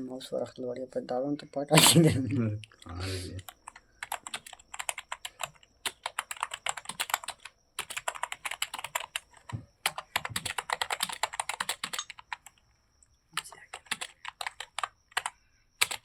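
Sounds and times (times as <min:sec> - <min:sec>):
computer keyboard typing: 0:02.6 - 0:12.7, 0:13.4 - 0:16.0.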